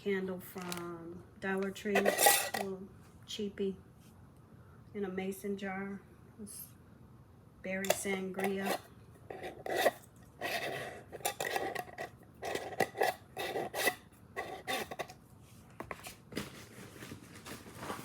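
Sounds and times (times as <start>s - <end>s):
scrapes and rattles: 1.9s - 2.7s, 7.9s - 15.2s.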